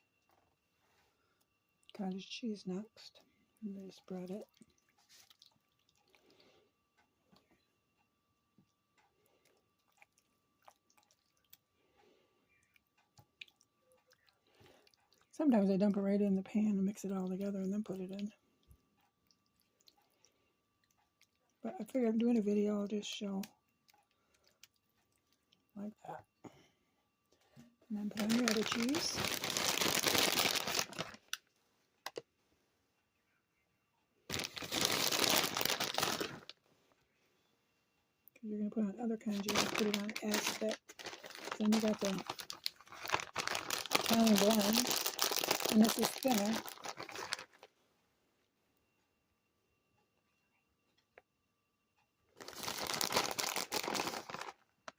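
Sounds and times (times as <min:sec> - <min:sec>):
soft squishing: 0:02.9 - 0:07.8, 0:08.5 - 0:22.6, 0:23.3 - 0:26.4, 0:39.2 - 0:47.8
plastic bag crinkling: 0:28.0 - 0:31.4, 0:34.3 - 0:36.6, 0:39.2 - 0:47.7, 0:52.4 - 0:54.9.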